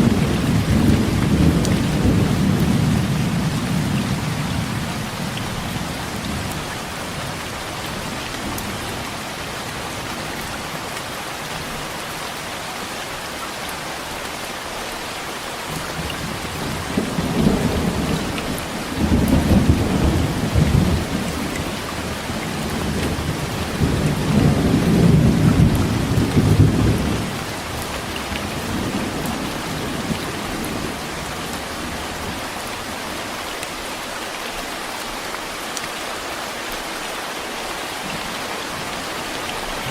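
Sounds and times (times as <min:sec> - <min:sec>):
heavy rain: 0:00.0 - 0:39.9
rolling thunder: 0:16.6 - 0:21.6.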